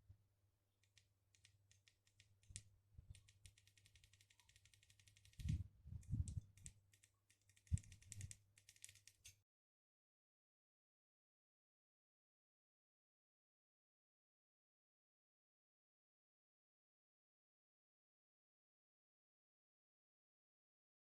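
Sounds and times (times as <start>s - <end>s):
rapid even clicking: 0.8s - 5.6s, 6.3s - 9.3s
small handling clicks: 0.8s - 5.6s, 6.2s - 9.4s.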